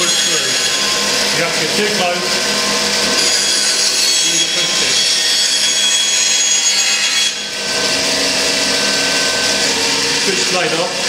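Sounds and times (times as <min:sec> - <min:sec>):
bandsaw cutting wood: 0:00.0 - 0:11.0.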